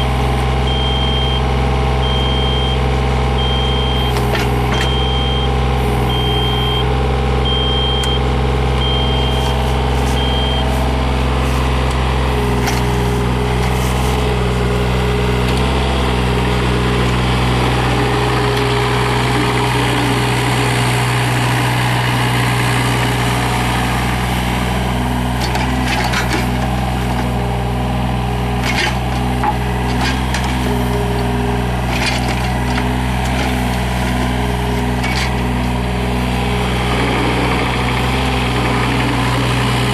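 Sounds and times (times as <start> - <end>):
diesel excavator engine running: 0.0 - 39.9
alarm beeping: 4.8 - 5.5, 6.1 - 10.8.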